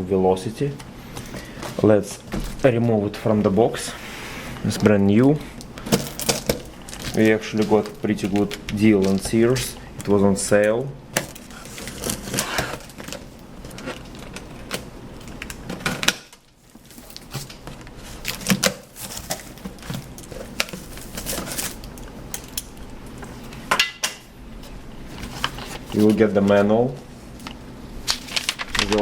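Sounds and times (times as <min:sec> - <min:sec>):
cardboard packaging handled: 0:05.6 - 0:09.7, 0:11.2 - 0:23.5, 0:24.6 - 0:26.7, 0:28.0 - 0:29.0.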